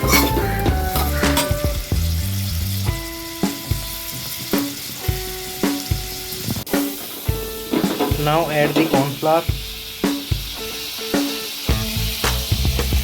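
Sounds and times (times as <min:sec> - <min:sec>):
melodic background music: 0:00.0 - 0:03.7
vegetables sizzling in a pan: 0:00.0 - 0:13.0.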